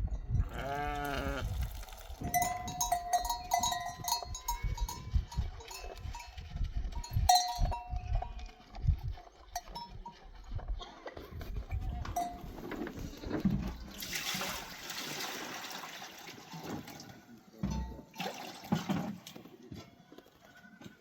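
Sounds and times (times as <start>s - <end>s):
animal bleat: 0.4s - 1.7s
livestock bells clinking: 2.1s - 10.4s, 12.0s - 13.3s.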